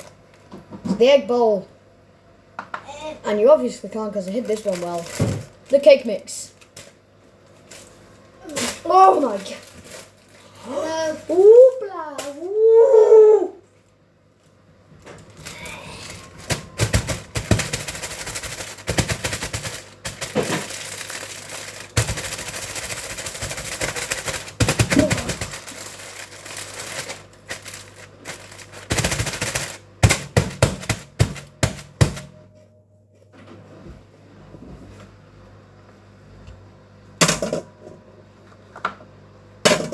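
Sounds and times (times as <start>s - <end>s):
crackling rattling handling noise: 4.0s - 10.4s, 15.0s - 32.4s.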